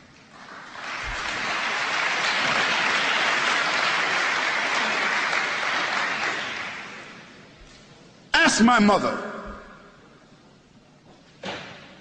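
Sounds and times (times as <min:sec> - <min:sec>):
audience applauding: 0:00.0 - 0:07.4.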